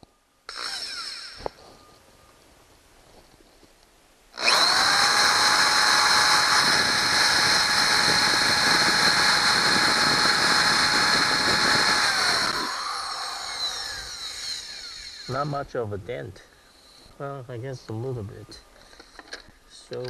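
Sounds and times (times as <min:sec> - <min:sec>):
electric drill whining: 0:00.0 - 0:01.8, 0:04.4 - 0:15.6.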